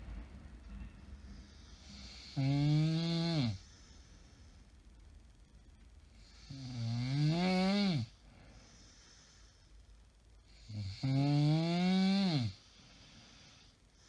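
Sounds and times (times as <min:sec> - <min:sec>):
faint breath: 0:00.0 - 0:02.4, 0:03.5 - 0:05.2, 0:08.1 - 0:10.8, 0:12.6 - 0:14.0
woman snoring: 0:01.8 - 0:03.7, 0:06.2 - 0:08.2, 0:10.6 - 0:12.6.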